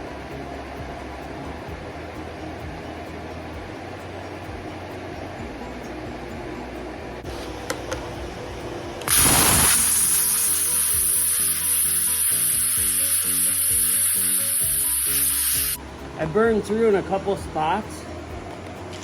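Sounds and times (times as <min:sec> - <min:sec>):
steady mechanical hum: 0:00.0 - 0:19.0
plasma cutter hissing: 0:09.0 - 0:15.8.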